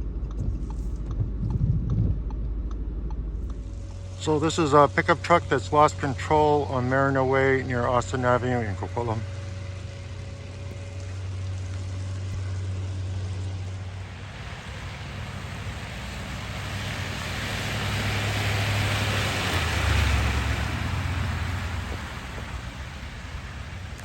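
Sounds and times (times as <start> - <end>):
low engine hum: 0.0 - 24.0
vehicle tyres rushing past: 9.2 - 24.0.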